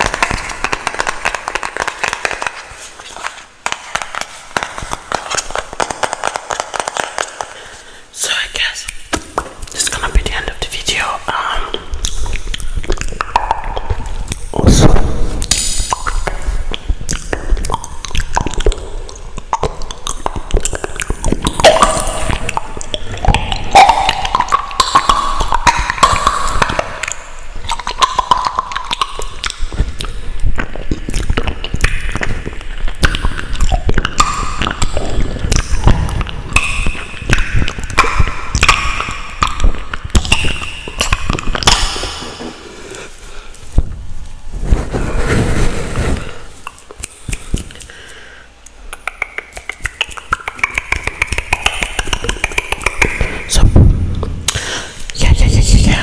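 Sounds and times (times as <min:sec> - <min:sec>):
wet mouth clicks and smacks: 0:00.0 - 0:44.0, 0:46.2 - 0:56.0.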